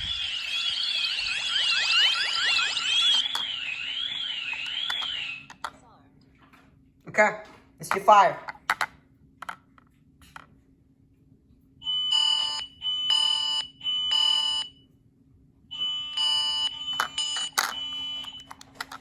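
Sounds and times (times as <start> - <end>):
alarm siren beeps: 0.0 - 5.7, 11.8 - 14.8, 15.7 - 19.0
clicks: 0.3 - 5.7, 17.0 - 19.0.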